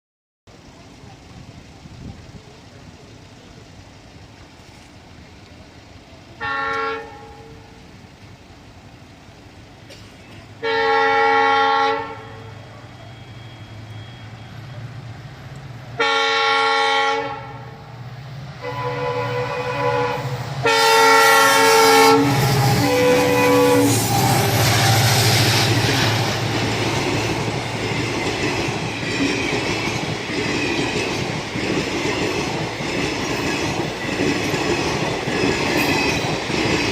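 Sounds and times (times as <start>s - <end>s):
train wheels rumbling on rails: 0.5s - 36.9s
train air horn blasts: 6.4s - 7.8s, 10.6s - 14.2s, 16.0s - 17.8s, 18.6s - 26.3s.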